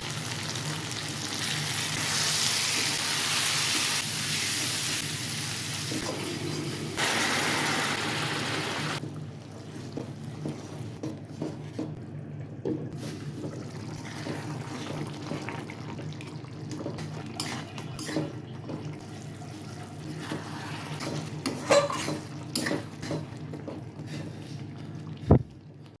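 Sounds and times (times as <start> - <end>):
food sizzling in a pan: 0.0 - 9.0
utensils and dishes clinking: 20.9 - 23.8.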